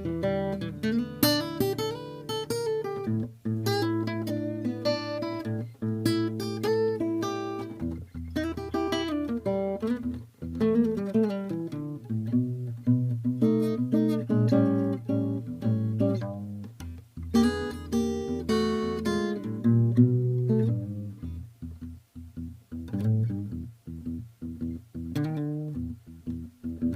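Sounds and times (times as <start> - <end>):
acoustic guitar playing: 0.0 - 26.9.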